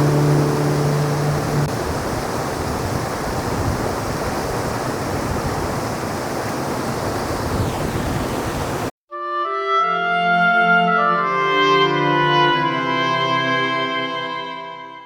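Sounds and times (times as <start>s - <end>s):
waterfall rushing: 0.0s - 8.9s.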